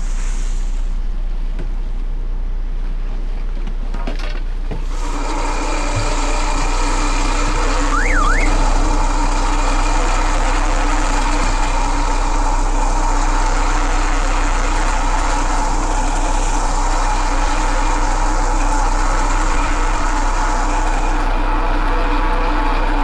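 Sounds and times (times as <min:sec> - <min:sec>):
engine humming: 0:00.0 - 0:23.0
short zigzag chirp: 0:07.8 - 0:08.9.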